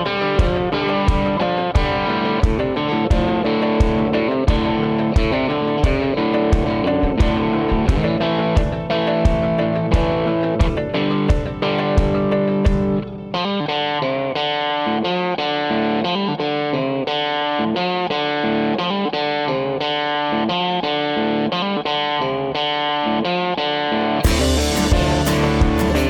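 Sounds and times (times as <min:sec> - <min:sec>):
drum hits: 0:00.0 - 0:13.2, 0:24.2 - 0:26.0
electric guitar picked notes: 0:00.0 - 0:26.0.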